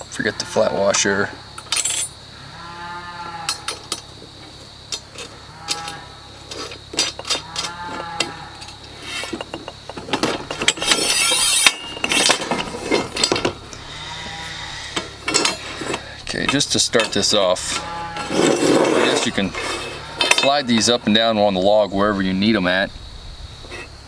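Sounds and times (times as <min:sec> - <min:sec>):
drawn-out calls: 0:00.0 - 0:01.6, 0:05.0 - 0:22.8
metal bolts and nuts clinking: 0:01.6 - 0:02.2, 0:03.5 - 0:14.0, 0:14.9 - 0:21.8
metal scraping: 0:05.0 - 0:22.3.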